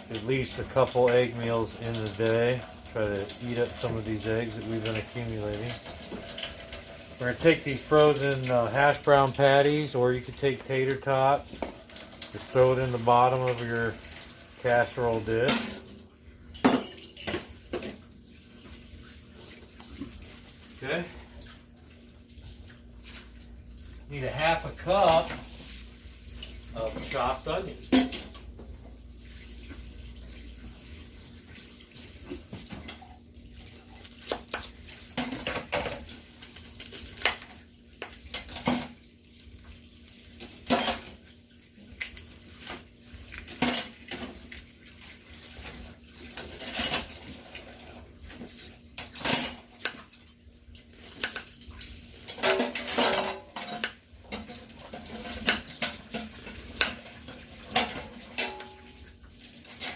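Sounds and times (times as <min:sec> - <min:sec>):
utensils and dishes clattering: 0:00.0 - 0:18.1, 0:26.4 - 0:28.6, 0:32.4 - 0:37.6, 0:38.2 - 0:39.2, 0:40.4 - 0:41.3, 0:43.4 - 0:44.6, 0:45.6 - 0:59.9.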